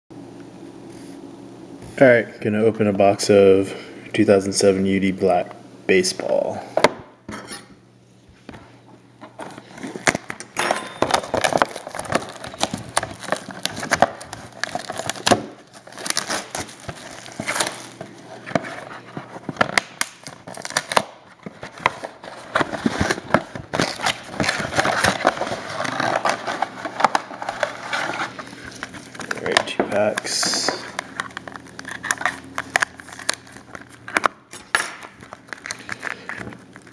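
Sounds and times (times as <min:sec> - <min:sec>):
wrapping crinkling and tearing: 0:11.0 - 0:34.4, 0:35.0 - 0:36.9
cardboard handled: 0:11.1 - 0:34.2.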